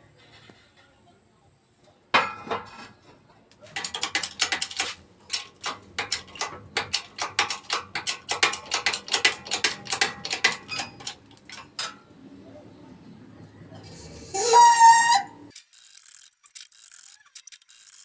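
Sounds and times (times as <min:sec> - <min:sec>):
metal parts clicking and clacking: 0:03.6 - 0:12.1.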